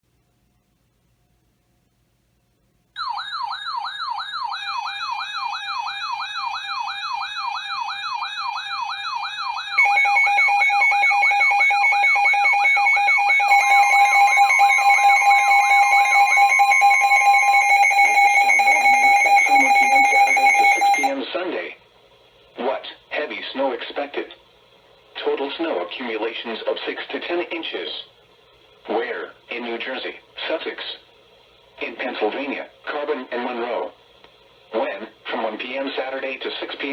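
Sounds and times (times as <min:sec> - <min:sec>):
electronic siren wailing: 0:03.0 - 0:21.1
steady alarm tone: 0:03.0 - 0:21.2.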